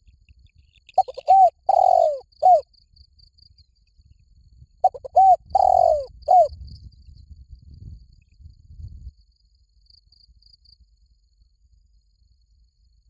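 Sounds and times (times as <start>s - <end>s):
faint high insect trill: 0.2s - 13.0s
dove cooing: 1.0s - 2.6s, 4.8s - 6.5s.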